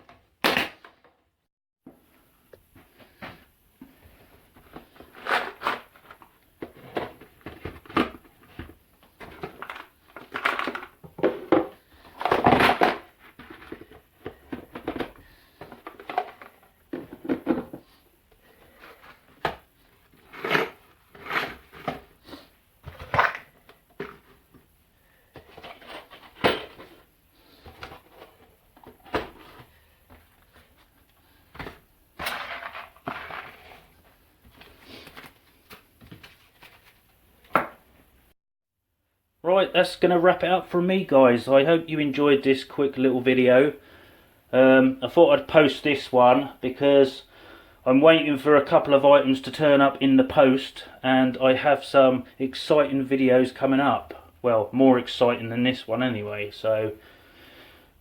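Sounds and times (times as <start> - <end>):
hard objects knocking and clattering: 4.6 - 17.9, 22.8 - 24.7, 25.3 - 30.4, 31.5 - 33.9.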